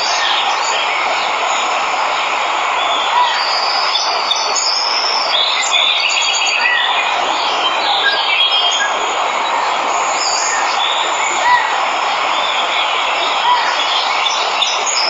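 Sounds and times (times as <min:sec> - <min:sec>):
waterfall rushing: 0:00.0 - 0:15.0
birds chirping and whistling: 0:02.8 - 0:11.7, 0:12.3 - 0:15.0.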